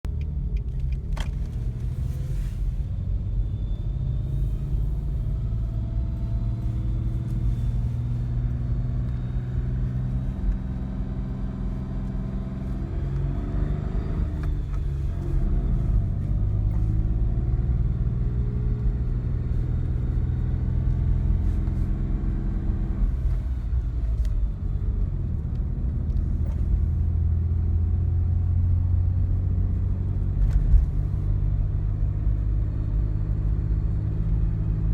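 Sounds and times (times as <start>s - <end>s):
car engine running: 0.0s - 34.9s.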